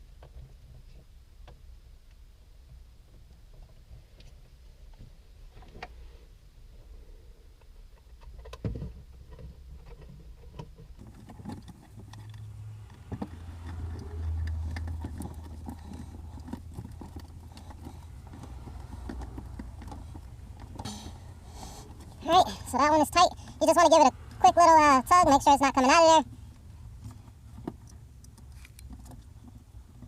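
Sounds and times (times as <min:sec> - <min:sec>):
screwdriver clicks and scrapes: 0:28.4 - 0:28.9.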